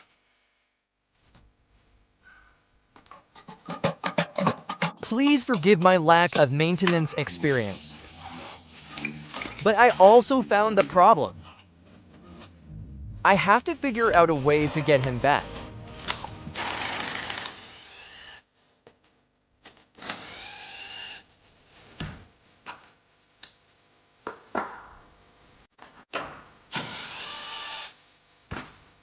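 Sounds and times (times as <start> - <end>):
whirring scraping tool: 7.3 - 9.7, 16.1 - 18.4.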